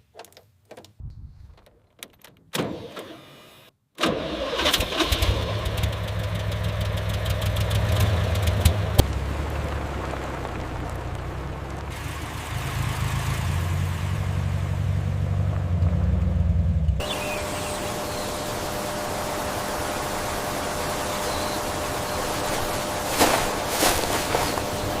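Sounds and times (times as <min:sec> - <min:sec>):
jeep engine idling: 0:05.3 - 0:25.0.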